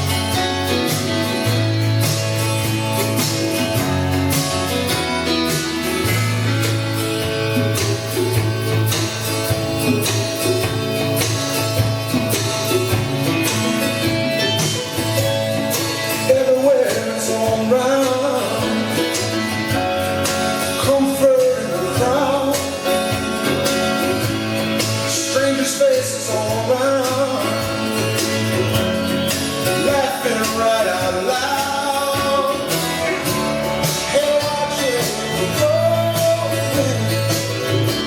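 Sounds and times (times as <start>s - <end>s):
guitar-led country band: 0.0s - 38.0s
person singing: 12.0s - 38.0s.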